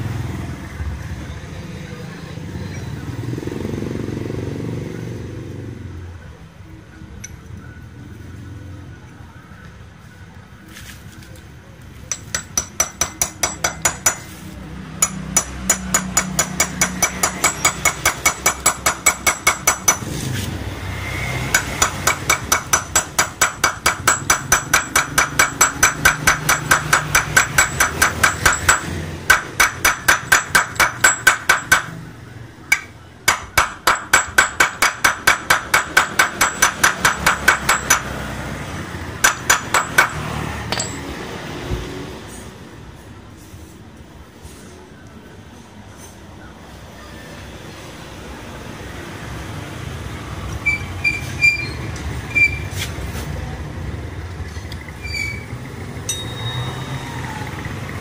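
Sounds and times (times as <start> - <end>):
hammer striking metal: 12.1 - 14.4, 15.0 - 20.1, 21.4 - 32.0, 32.7 - 38.3, 39.2 - 41.3, 56.0 - 56.9.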